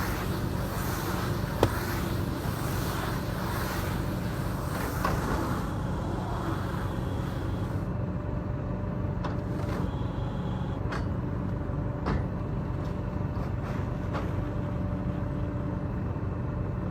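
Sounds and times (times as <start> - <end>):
baling machine droning: 0.0 - 8.2.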